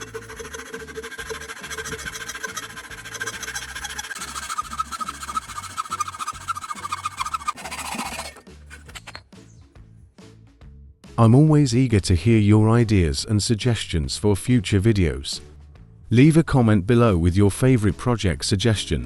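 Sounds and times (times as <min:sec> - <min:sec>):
knife sharpening scrape: 0:00.0 - 0:09.2.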